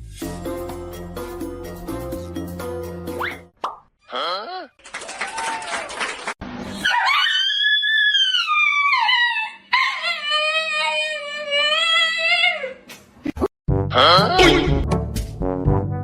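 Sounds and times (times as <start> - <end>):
dog howling: 6.9 - 12.6.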